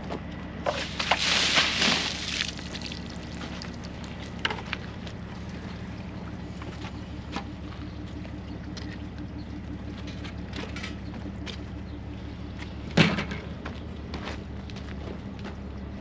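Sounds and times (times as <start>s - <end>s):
engine idling: 0.0s - 16.0s
loud clunk: 12.9s - 13.6s.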